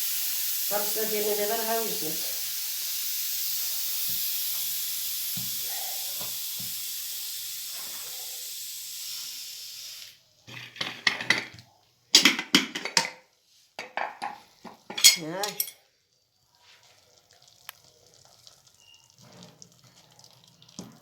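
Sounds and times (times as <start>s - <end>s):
pot of soup hissing: 0.0s - 11.2s
spoon scraping a pot: 10.5s - 11.6s, 13.8s - 15.8s.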